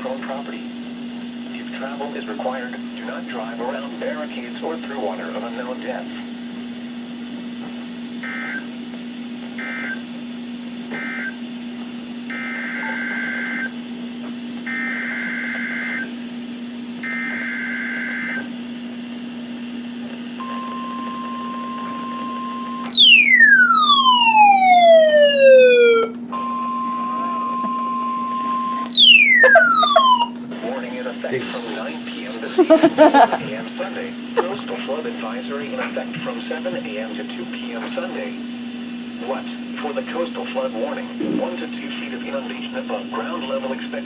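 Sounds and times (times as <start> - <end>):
steady radio alert tone: 14.7 - 16.2, 20.4 - 33.4
two-pitch warbling data bursts: 22.9 - 26.1, 28.8 - 30.4.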